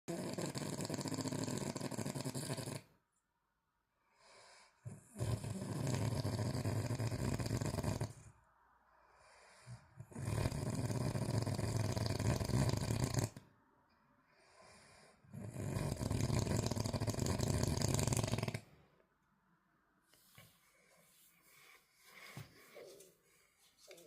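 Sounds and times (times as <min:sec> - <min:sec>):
deep rasping snoring: 0:00.1 - 0:03.0, 0:04.7 - 0:08.4, 0:09.6 - 0:13.5, 0:14.7 - 0:18.8.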